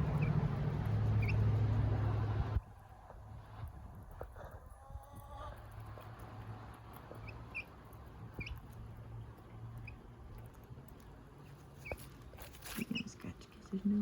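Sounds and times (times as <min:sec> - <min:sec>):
chick peeping: 0:00.0 - 0:01.5, 0:04.3 - 0:05.8, 0:07.0 - 0:08.8
low background rumble: 0:00.0 - 0:14.0.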